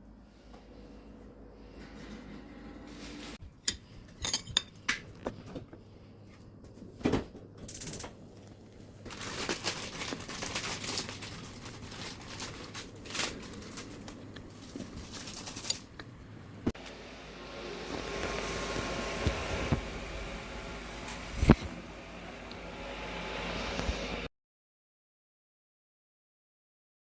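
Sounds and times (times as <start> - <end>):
clattering and rustling: 1.6 - 5.8, 6.4 - 16.1
dishes clinking: 3.7 - 5.0.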